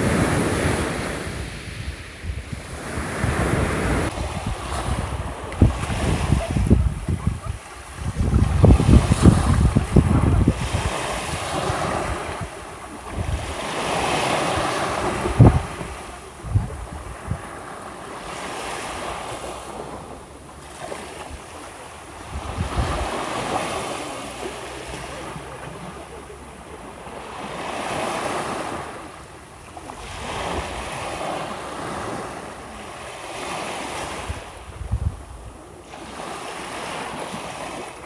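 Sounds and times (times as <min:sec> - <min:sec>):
wind buffeting microphone: 0:00.0 - 0:17.7, 0:22.1 - 0:23.6, 0:34.0 - 0:35.8
small waves breaking on shore: 0:00.0 - 0:38.0.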